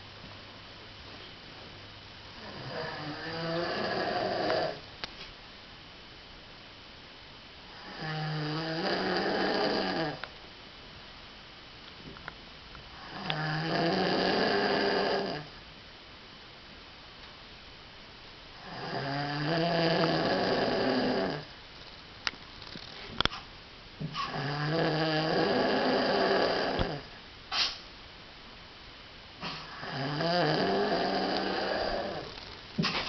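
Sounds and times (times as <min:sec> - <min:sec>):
cow snoring: 0:02.4 - 0:04.8, 0:07.8 - 0:10.2, 0:18.6 - 0:21.5, 0:24.2 - 0:27.1, 0:29.4 - 0:32.4.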